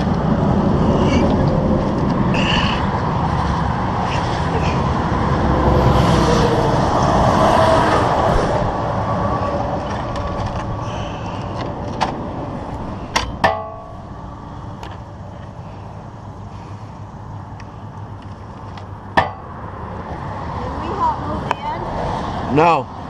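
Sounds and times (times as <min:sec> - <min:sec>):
heavy vehicle passing: 0:00.0 - 0:23.0
highway traffic passing: 0:00.0 - 0:23.0
sharp knocks: 0:13.1 - 0:14.0.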